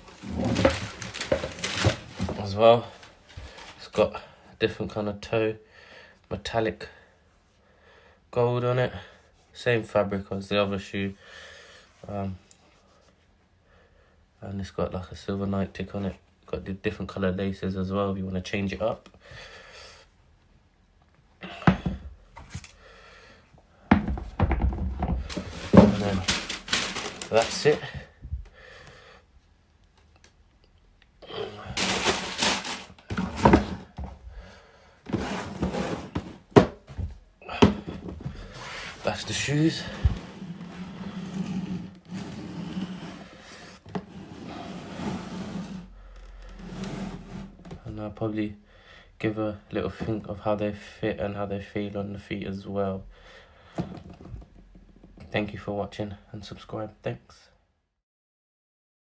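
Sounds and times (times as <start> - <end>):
shoe box handling and rustling: 0.0 - 4.0, 24.0 - 28.1, 31.4 - 34.5, 35.1 - 44.2
soft rustle: 25.3 - 27.9, 31.8 - 33.1.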